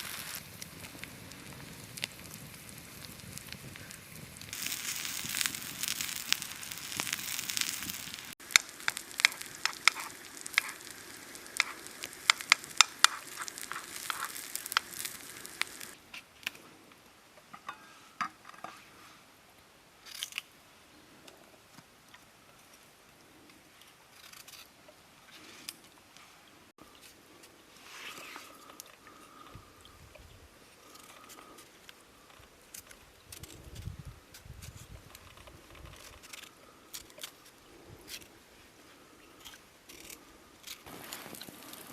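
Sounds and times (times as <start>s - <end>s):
food sizzling over fire: 0.0s - 16.0s, 39.9s - 41.9s
fire crackling and popping: 0.0s - 16.6s, 26.9s - 38.3s, 39.3s - 41.9s.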